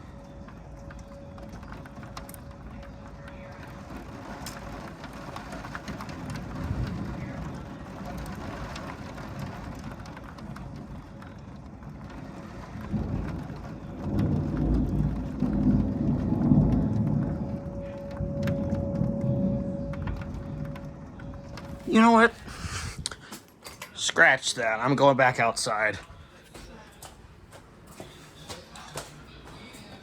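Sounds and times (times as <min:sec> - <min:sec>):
distant warning siren: 0:00.0 - 0:23.0
thunder rumbling: 0:00.0 - 0:23.3
steady rain: 0:00.0 - 0:27.1.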